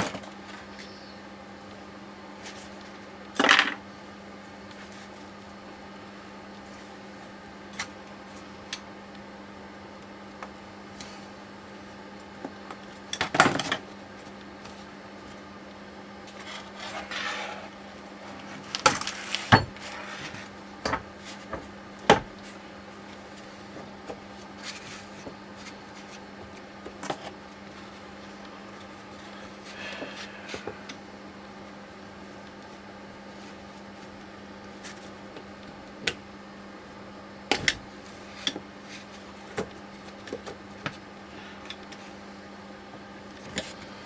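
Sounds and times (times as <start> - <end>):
steady low hum: 0.0 - 44.0
scraping and rubbing: 16.4 - 20.6.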